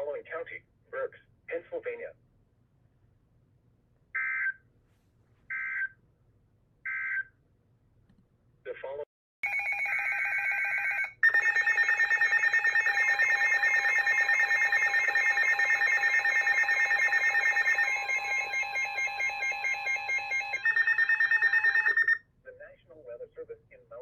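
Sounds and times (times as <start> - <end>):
harsh pulsing alarm tone: 9.4 - 22.2.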